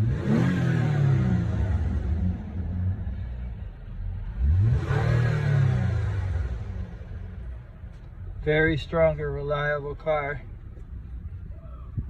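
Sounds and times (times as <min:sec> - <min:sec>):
car engine revving: 0:00.0 - 0:09.3.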